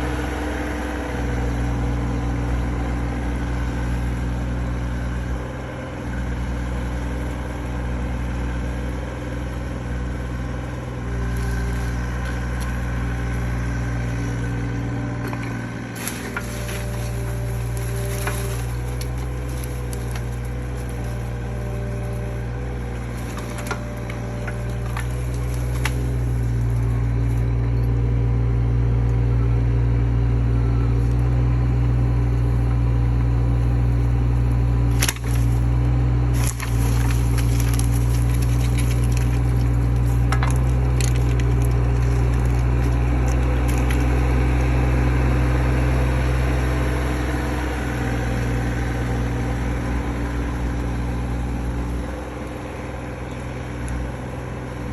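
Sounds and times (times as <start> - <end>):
excavator engine running: 0.0 - 54.9
wood cracking and snapping: 15.2 - 27.4, 34.9 - 46.4.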